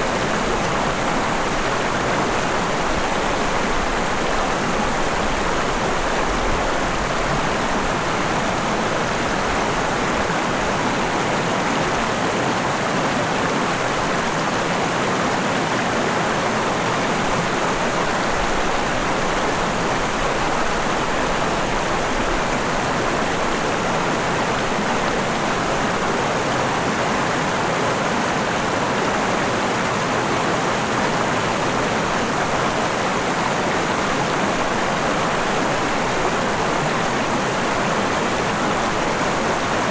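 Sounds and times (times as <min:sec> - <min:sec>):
river flowing over rocks: 0:00.0 - 0:39.9.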